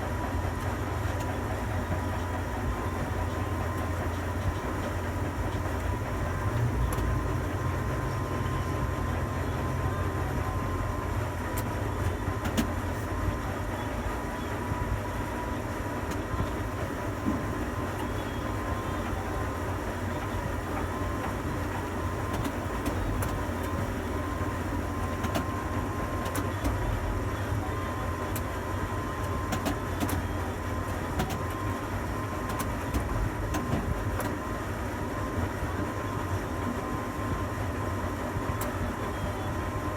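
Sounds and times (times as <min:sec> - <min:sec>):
low machinery hum: 0:00.0 - 0:39.9.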